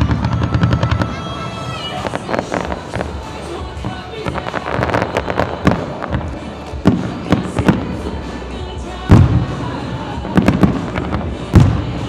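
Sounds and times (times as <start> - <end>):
fireworks booming and cracking: 0.0 - 12.0
music playing: 0.0 - 12.0.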